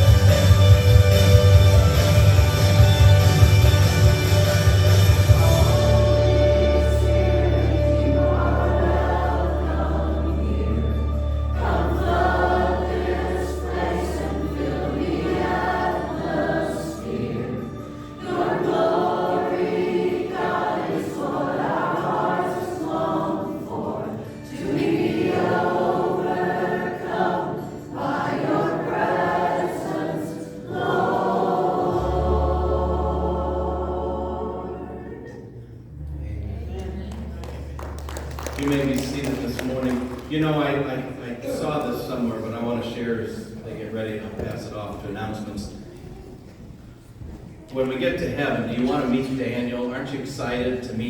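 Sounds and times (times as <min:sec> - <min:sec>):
group singing worship song: 0:05.3 - 0:35.8.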